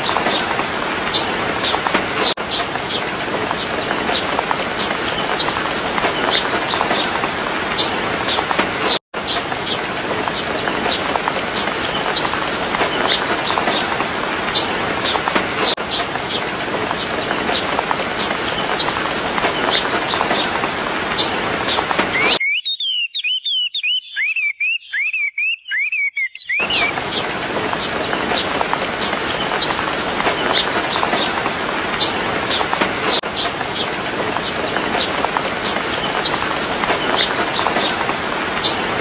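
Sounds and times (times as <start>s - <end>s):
birds chirping: 0.0s - 39.0s.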